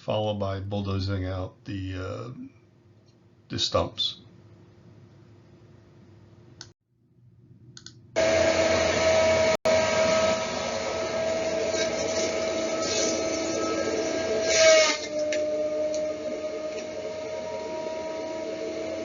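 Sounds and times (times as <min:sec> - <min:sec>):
heavy machine engine running: 0:08.2 - 0:19.0
high steady whine: 0:08.2 - 0:19.0.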